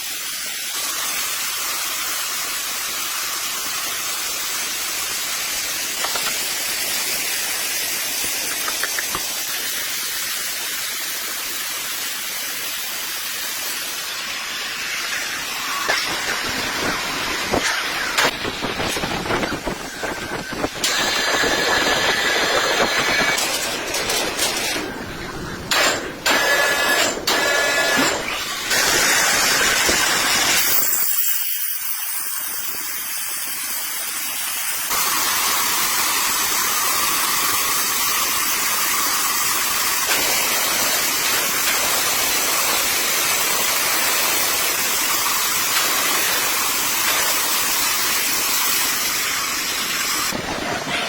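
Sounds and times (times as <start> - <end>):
wood-processing machinery hissing: 0.0 - 51.0.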